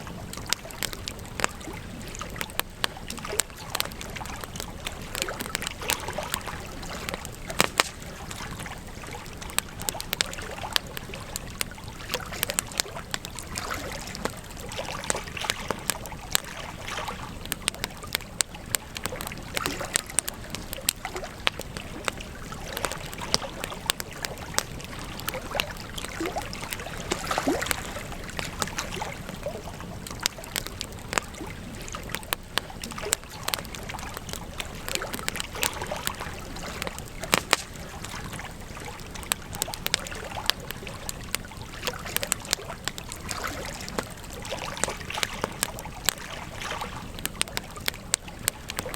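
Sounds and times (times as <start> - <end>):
campfire crackling and popping: 0.0 - 48.9.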